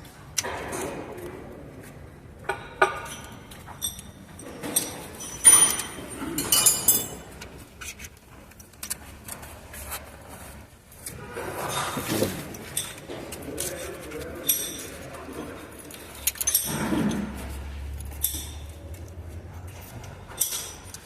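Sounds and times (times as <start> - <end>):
metal tools clinking: 2.7 - 9.2, 11.6 - 21.0.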